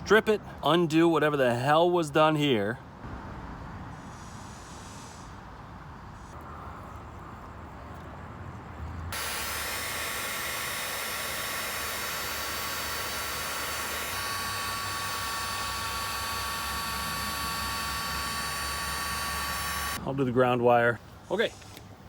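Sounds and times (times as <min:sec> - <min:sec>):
heat gun blowing with fan whine: 0:09.1 - 0:20.0.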